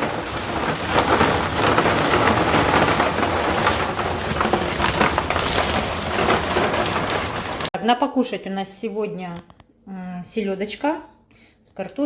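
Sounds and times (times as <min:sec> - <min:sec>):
salt pellets pouring into tank: 0:00.0 - 0:07.7.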